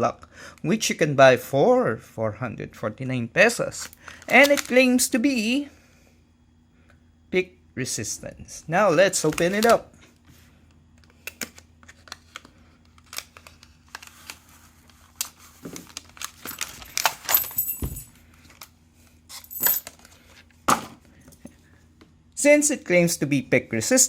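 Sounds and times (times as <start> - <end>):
packaging clicks and rustles: 3.8 - 4.8, 11.0 - 20.3.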